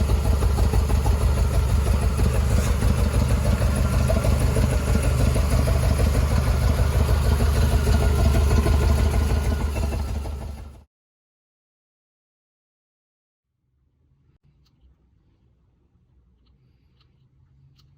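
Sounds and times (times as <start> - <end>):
car engine idling: 0.0 - 10.8.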